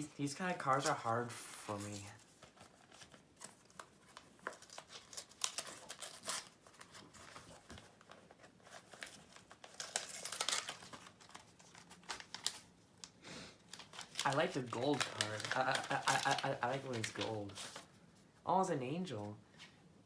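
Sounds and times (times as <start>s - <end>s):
paper crinkling: 0.5s - 18.0s
paper envelope tearing: 1.6s - 12.7s, 13.7s - 17.8s.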